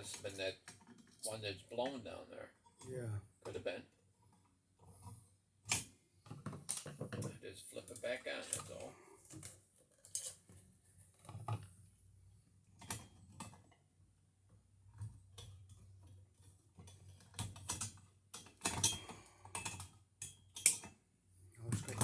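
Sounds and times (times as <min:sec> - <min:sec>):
hand tools clicking and knocking: 0:16.8 - 0:21.0.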